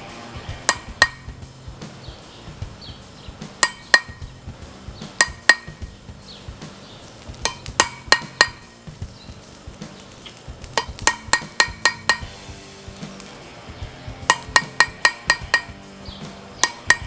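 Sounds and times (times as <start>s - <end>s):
hammer tapping metal chisel: 0.7s - 1.3s, 3.6s - 4.3s, 5.2s - 5.9s, 7.4s - 8.7s, 10.7s - 12.3s, 14.3s - 15.8s, 16.6s - 17.0s.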